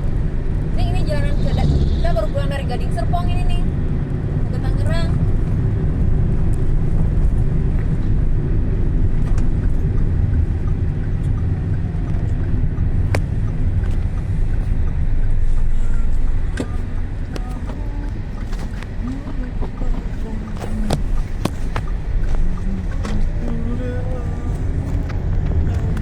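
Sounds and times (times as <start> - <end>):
vehicle engine and road noise: 0.0 - 26.0.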